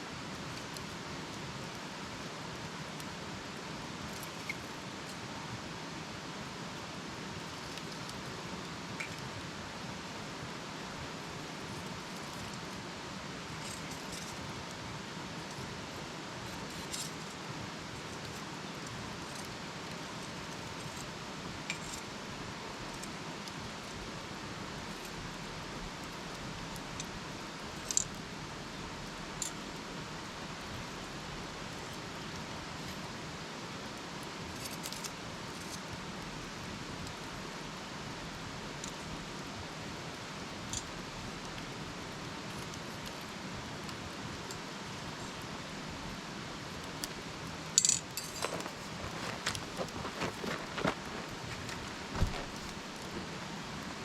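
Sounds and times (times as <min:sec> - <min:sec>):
campfire hissing: 0:00.0 - 0:54.0
fire popping and crackling: 0:48.1 - 0:53.4.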